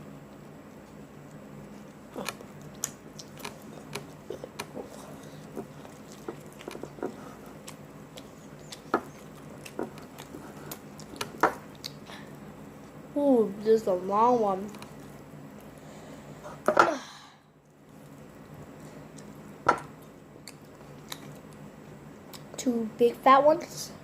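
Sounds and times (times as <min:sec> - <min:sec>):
mouth chewing and smacking: 0:00.3 - 0:13.0, 0:17.6 - 0:22.6
crunchy bites: 0:00.8 - 0:12.2.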